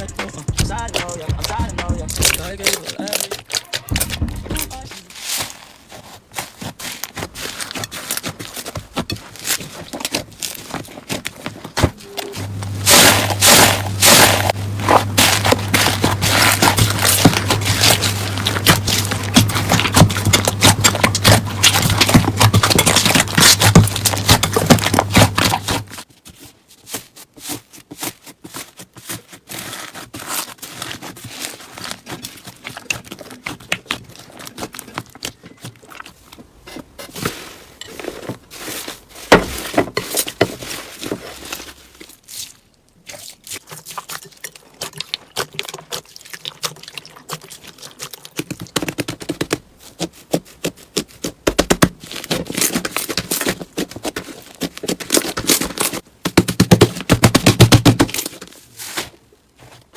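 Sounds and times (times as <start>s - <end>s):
slime squelching and popping: 0.6s - 26.0s.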